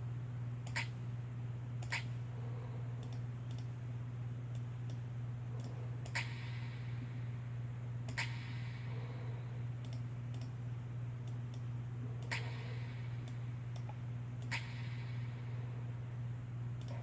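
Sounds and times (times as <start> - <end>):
steady low hum: 0.0 - 17.0
sharp clicks: 0.6 - 0.9, 1.8 - 2.1, 3.0 - 3.7, 5.6 - 6.6, 9.8 - 10.6, 11.2 - 15.0.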